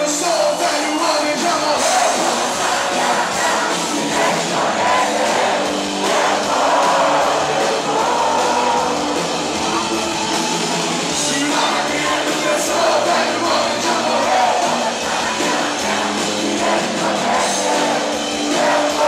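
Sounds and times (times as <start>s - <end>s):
rock gospel band playing: 0.0s - 19.0s
person singing: 11.1s - 19.0s.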